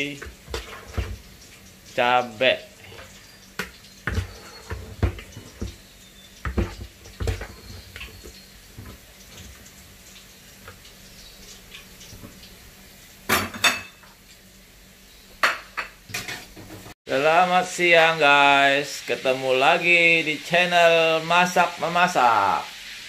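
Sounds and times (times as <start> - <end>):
kitchen utensils clinking and knocking: 6.4 - 9.5, 13.3 - 14.1, 15.4 - 16.9.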